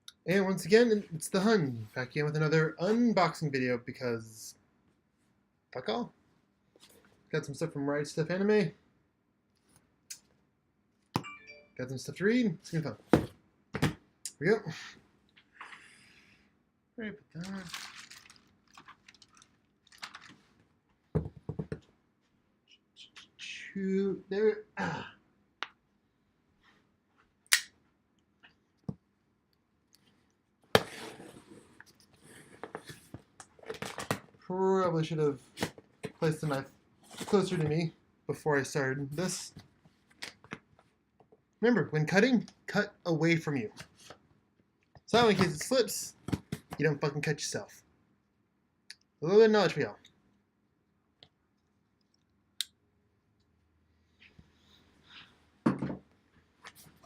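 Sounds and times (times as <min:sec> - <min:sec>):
scraping and rustling: 0:17.4 - 0:20.6.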